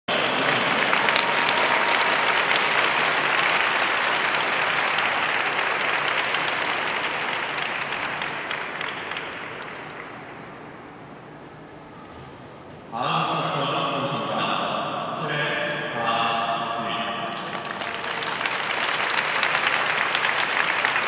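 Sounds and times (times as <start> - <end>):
crowd applauding: 0.1 - 10.6, 17.2 - 21.0.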